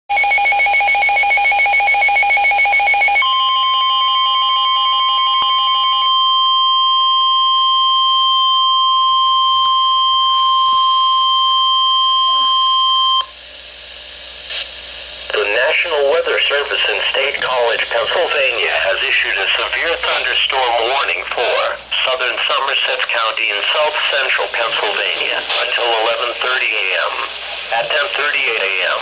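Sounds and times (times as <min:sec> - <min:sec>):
steady warning alarm tone: 0:00.1 - 0:13.4, 0:15.4 - 0:21.2.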